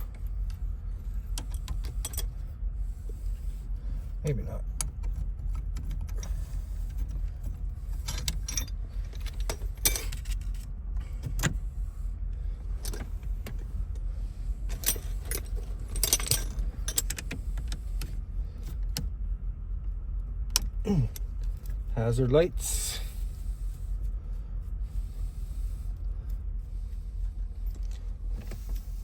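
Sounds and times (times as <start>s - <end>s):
steady low rumble: 0.0s - 29.0s
metal tools clinking: 8.0s - 10.6s, 14.7s - 17.2s.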